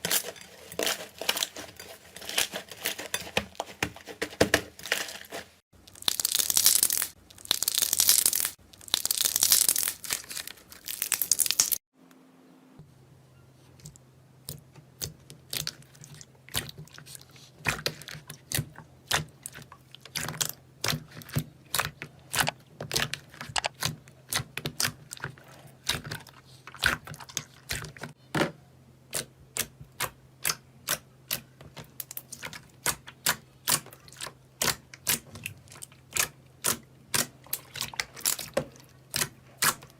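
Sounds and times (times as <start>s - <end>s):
slime crinkly crackling: 0.0s - 3.7s, 4.8s - 11.8s.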